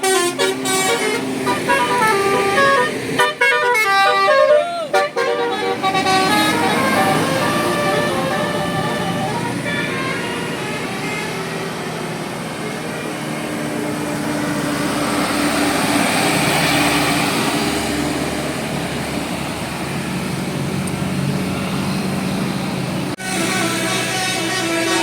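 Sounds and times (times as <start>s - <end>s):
multi-tone musical bus horn: 0.0s - 12.2s, 23.2s - 25.0s
diesel bus engine hum: 0.0s - 25.0s
tyre and traffic noise: 0.0s - 25.0s.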